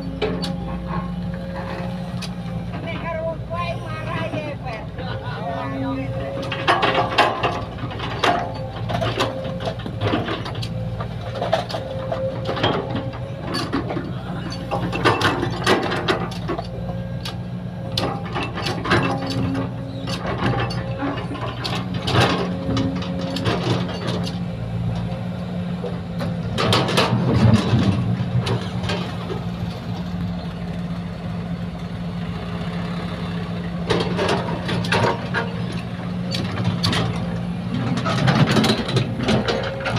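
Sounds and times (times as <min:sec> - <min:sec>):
metallic clanks and knocks: 0:00.0 - 0:03.2, 0:06.2 - 0:25.2, 0:26.2 - 0:29.5, 0:33.8 - 0:39.9
excavator diesel engine running: 0:00.0 - 0:39.9.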